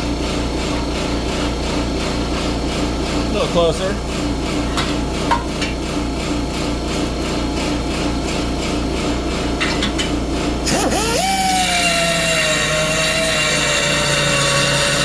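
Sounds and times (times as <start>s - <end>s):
air grinder cutting steel: 10.6s - 15.0s.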